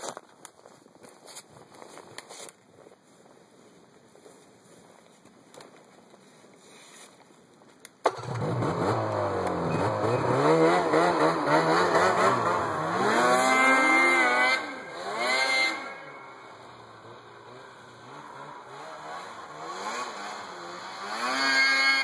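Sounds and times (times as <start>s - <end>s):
snowmobile engine revving: 8.1s - 22.0s.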